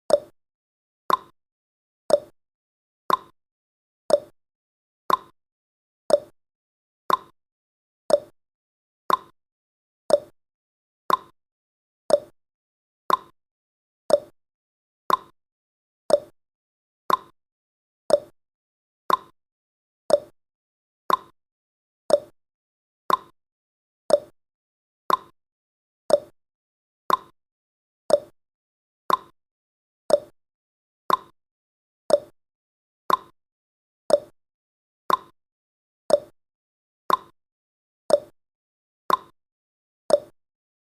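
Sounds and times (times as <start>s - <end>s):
clock ticking: 1.1s - 1.3s, 3.1s - 3.3s, 5.1s - 5.3s, 7.1s - 7.3s, 9.1s - 9.3s, 11.1s - 11.3s, 13.1s - 13.3s, 15.1s - 15.3s, 17.1s - 17.3s, 19.1s - 19.3s, 20.1s - 20.3s, 21.1s - 21.3s, 23.1s - 23.3s, 25.1s - 25.3s, 27.1s - 27.3s, 29.1s - 29.3s, 30.1s - 30.3s, 31.1s - 31.3s, 32.1s - 32.4s, 33.1s - 33.3s, 34.1s - 34.4s, 35.1s - 35.4s, 36.1s - 36.4s, 37.1s - 37.4s, 38.1s - 38.4s, 39.1s - 39.4s, 40.1s - 40.4s.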